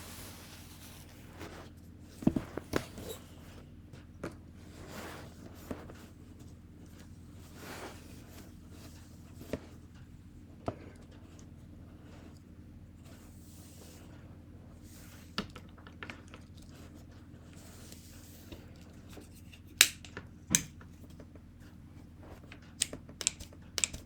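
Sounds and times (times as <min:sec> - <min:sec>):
hair iron clicks and taps: 0:22.8 - 0:24.0.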